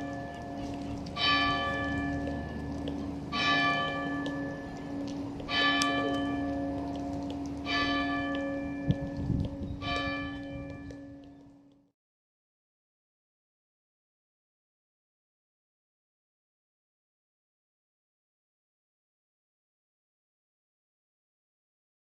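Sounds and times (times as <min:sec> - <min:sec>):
large bell ringing: 0:00.0 - 0:11.2.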